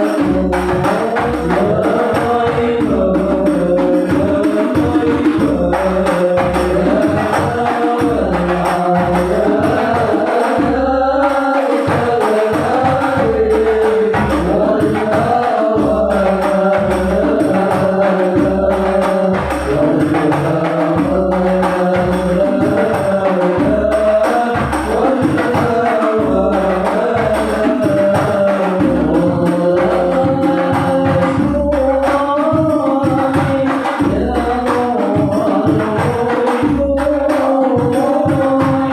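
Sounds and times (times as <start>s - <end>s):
devotional singing: 0.0s - 38.9s
hand drums beating: 0.0s - 38.9s.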